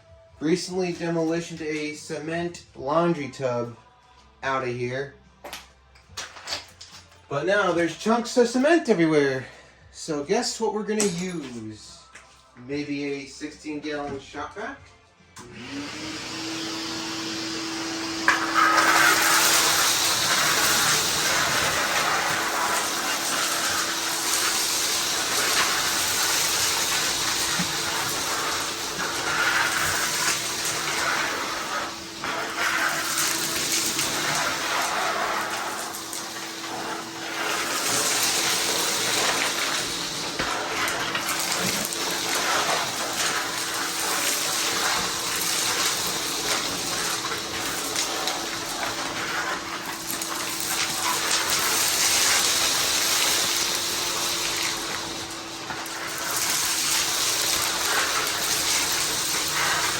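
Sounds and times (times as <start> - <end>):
shop vacuum running: 0.0 - 5.0, 7.2 - 59.9
vacuum sucking up cement chunks: 15.4 - 59.9.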